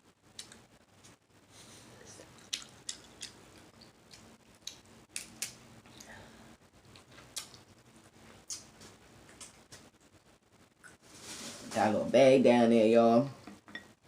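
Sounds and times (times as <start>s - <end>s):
chewing: 2.1s - 6.2s, 6.8s - 10.1s
crab shell cracking: 2.5s - 6.1s.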